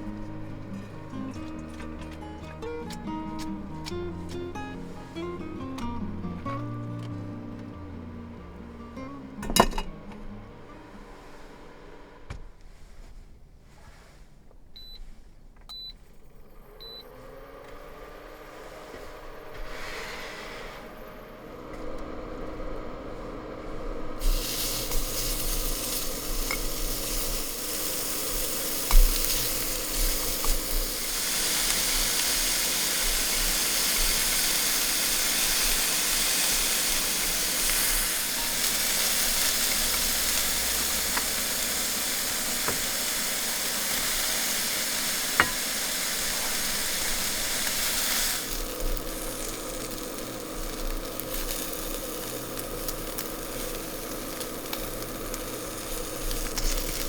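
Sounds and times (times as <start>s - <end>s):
cooktop humming: 0.0s - 13.0s, 15.7s - 57.0s
food sizzling in a pan: 24.2s - 57.0s
stirring knocks: 42.5s - 43.0s, 45.3s - 47.5s.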